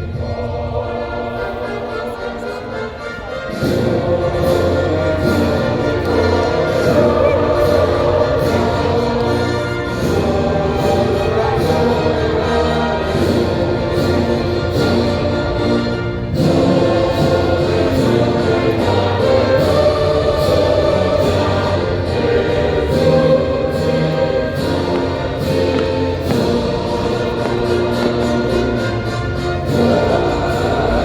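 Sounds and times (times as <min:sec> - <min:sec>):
choir singing: 0:00.0 - 0:31.0
orchestral music: 0:00.0 - 0:31.0.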